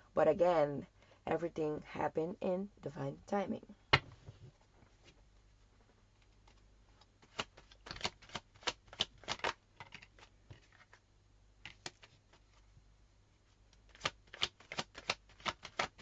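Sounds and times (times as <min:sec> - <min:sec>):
cards shuffling and snapping: 0:07.2 - 0:11.0, 0:11.6 - 0:12.6, 0:13.7 - 0:16.0.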